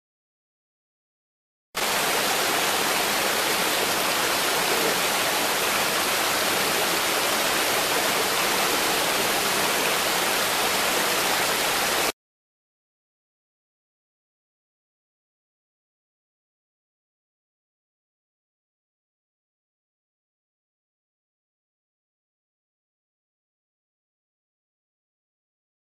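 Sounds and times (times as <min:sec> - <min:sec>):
water rushing over rocks: 0:01.8 - 0:12.1.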